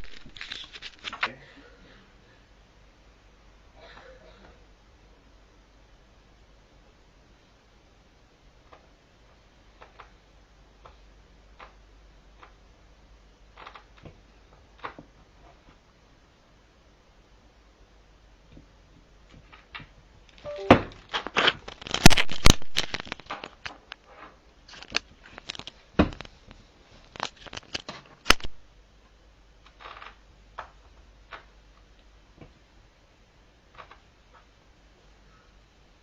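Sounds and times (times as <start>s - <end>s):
rustling: 0.0s - 1.3s.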